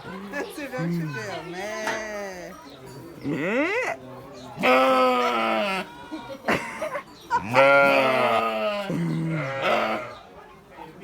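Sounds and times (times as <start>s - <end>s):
sheep bleating: 7.4s - 10.2s.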